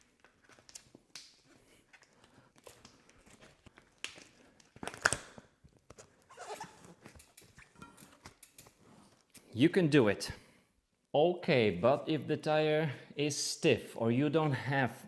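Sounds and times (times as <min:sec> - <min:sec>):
tire rubber rubbing against rim: 0:06.3 - 0:07.0.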